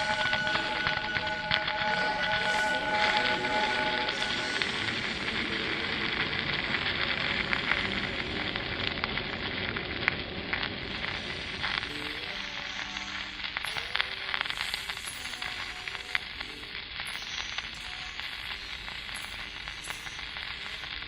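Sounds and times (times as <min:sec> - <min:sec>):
faint held musical tones: 0:00.0 - 0:06.1, 0:11.1 - 0:21.0
crackling and sizzling noise: 0:00.0 - 0:21.0.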